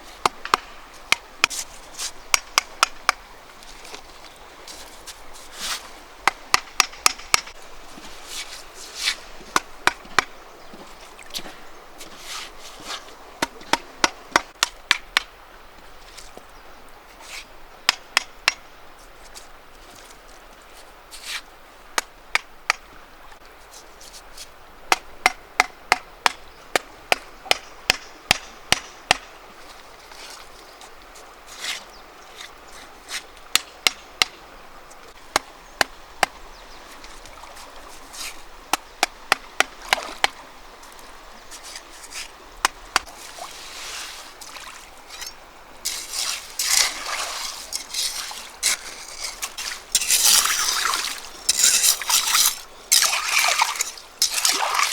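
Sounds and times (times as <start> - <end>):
blade chopping: 45.9 - 54.9.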